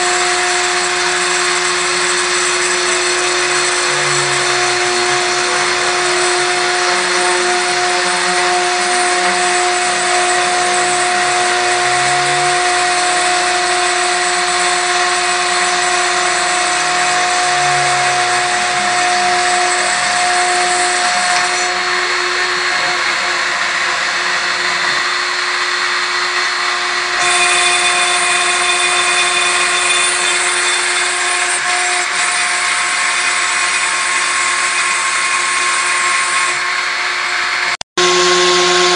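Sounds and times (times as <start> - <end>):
router spindle whine: 0.0 - 38.9
hiss of cutting acrylic: 27.2 - 36.7.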